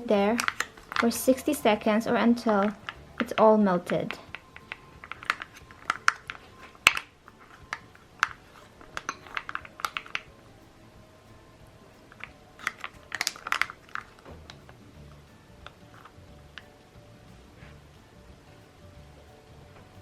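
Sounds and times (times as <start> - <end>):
small objects clicking and tapping: 0.0 - 10.4, 12.0 - 17.4.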